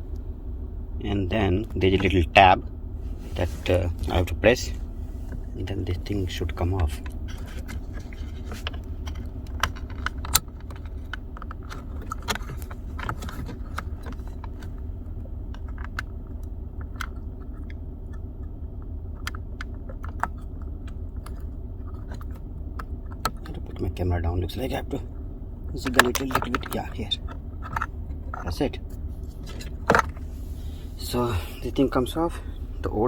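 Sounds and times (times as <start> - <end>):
running car hum: 0.0 - 33.0
plastic clicks and rattles: 7.3 - 14.7.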